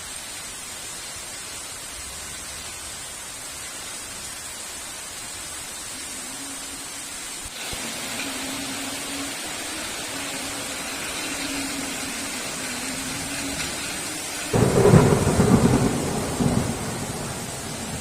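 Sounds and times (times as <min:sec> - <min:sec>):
heavy rain hissing: 0:00.0 - 0:18.0
thunderclap rumbling: 0:11.0 - 0:18.0.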